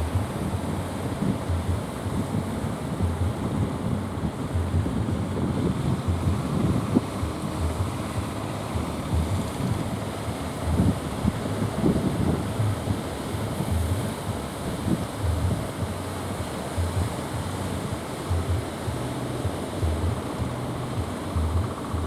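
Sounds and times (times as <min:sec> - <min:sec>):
sea surf: 0:00.0 - 0:22.0
wind buffeting microphone: 0:00.0 - 0:22.0.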